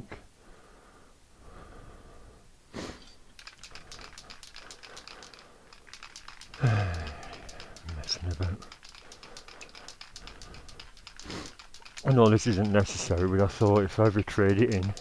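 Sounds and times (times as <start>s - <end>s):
spray can ball rattling: 3.3s - 15.0s.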